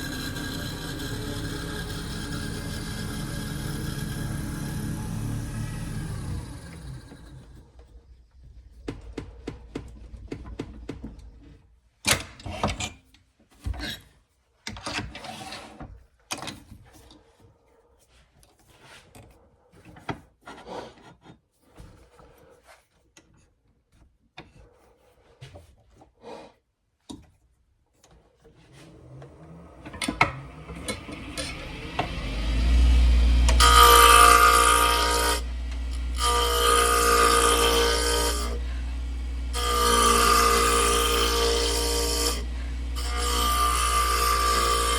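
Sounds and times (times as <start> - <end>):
wood lathe humming: 0.0 - 8.2, 28.6 - 44.9
turning tool scraping wood: 0.0 - 11.6, 15.1 - 16.0, 28.0 - 44.9.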